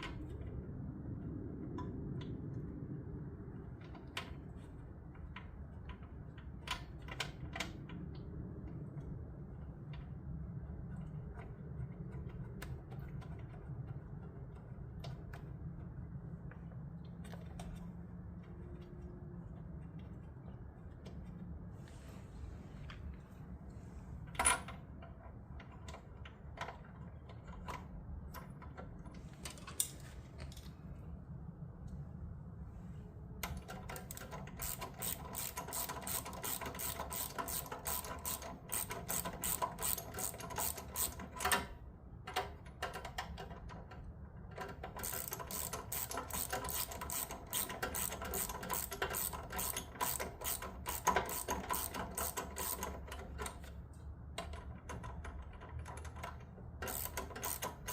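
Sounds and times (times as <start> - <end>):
ratchet wrench clicking: 34.0 - 41.7, 44.7 - 53.4, 56.8 - 57.9.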